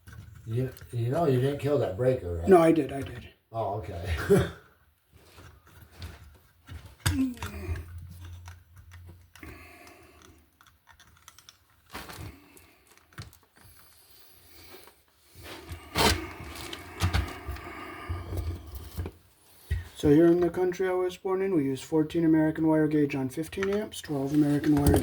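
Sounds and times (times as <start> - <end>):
electrical wiring clicks and taps: 5.4 - 11.9, 12.9 - 13.8, 23.4 - 23.9.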